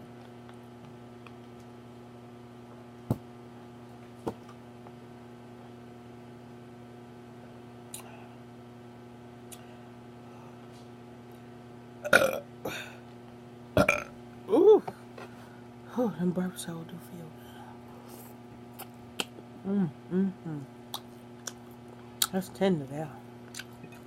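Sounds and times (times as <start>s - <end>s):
electrical hum: 0.0s - 24.0s
loud burp: 12.0s - 12.8s, 13.8s - 14.2s.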